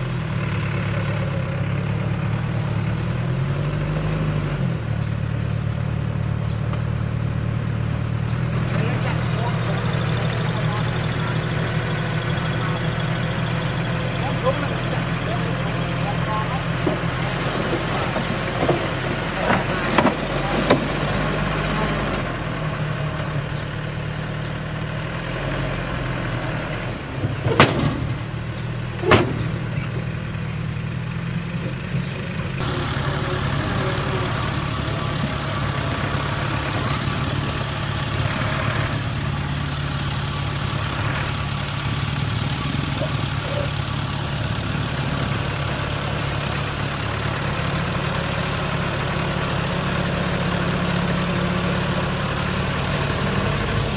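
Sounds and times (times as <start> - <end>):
diesel machinery engine running: 0.0 - 53.9
sharp knocks: 27.2 - 29.8.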